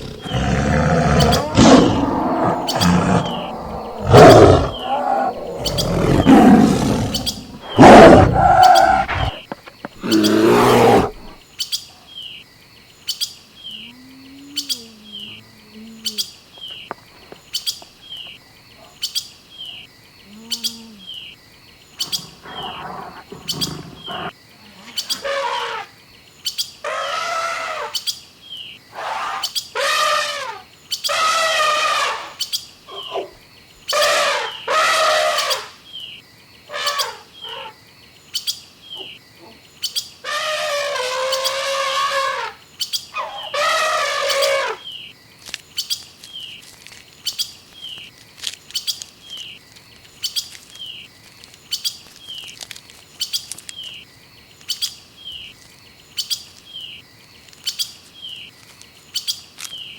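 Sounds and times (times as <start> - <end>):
longer bird calls: 0.0 - 12.4, 13.1 - 24.4
bird chirping: 0.0 - 24.3.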